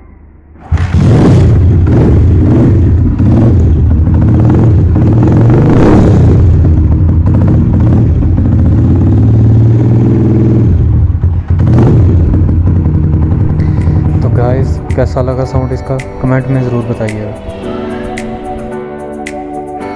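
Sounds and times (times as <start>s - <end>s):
motorcycle engine revving: 0.6s - 15.0s.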